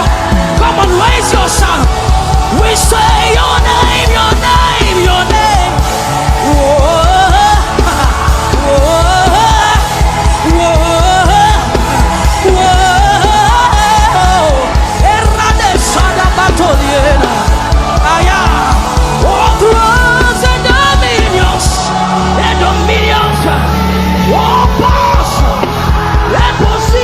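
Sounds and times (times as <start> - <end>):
gospel worship music: 0.0 - 27.0
person singing: 0.0 - 27.0.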